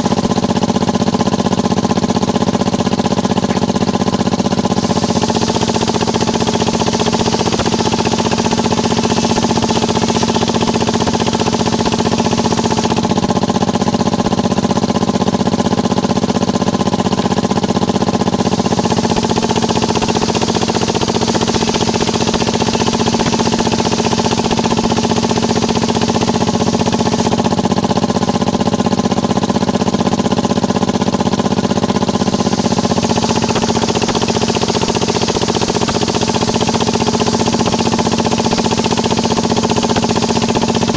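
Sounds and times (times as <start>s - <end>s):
circular sawmill engine running: 0.0s - 40.9s
hiss: 3.4s - 13.2s, 18.0s - 27.5s, 31.1s - 40.9s.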